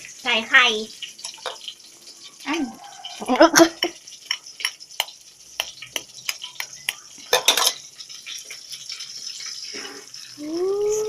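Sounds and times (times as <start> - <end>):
egg sizzling in oil: 0.0 - 11.0
metal utensil clinking against pan: 1.2 - 1.7, 7.2 - 9.7.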